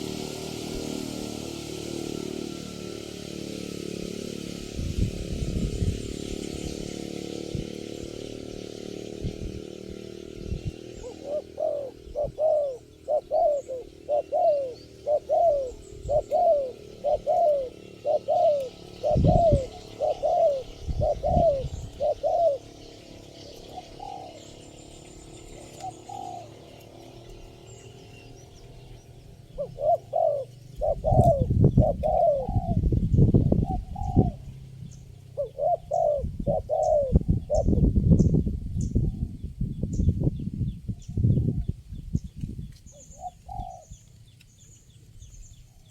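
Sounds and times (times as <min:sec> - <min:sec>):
doves cooing: 0:09.8 - 0:37.9, 0:42.9 - 0:44.2.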